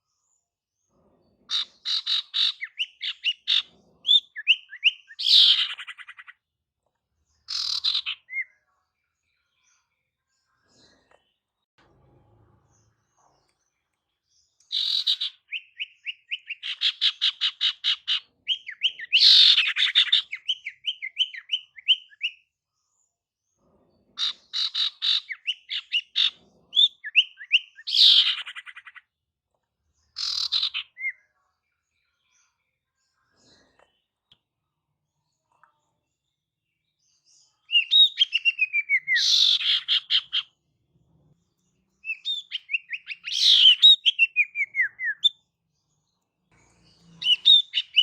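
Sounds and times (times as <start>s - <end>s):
bird chattering trills and whistles: 1.5s - 6.3s, 7.5s - 8.4s, 14.7s - 22.4s, 24.2s - 29.0s, 30.2s - 31.2s, 37.7s - 40.5s, 42.0s - 45.4s, 47.2s - 48.0s.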